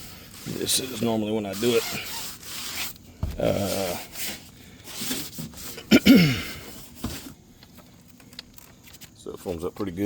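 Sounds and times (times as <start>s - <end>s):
brush scrubbing strokes: 0.0s - 5.9s.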